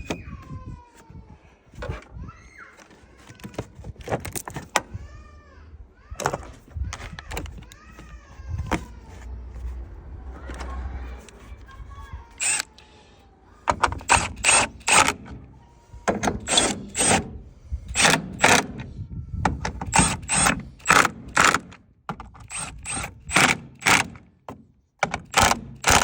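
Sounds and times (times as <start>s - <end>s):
sharp mechanical clicks: 12.3s - 12.8s, 13.7s - 15.4s, 16.2s - 17.3s, 17.9s - 18.8s, 19.7s - 24.3s, 25.0s - 26.0s.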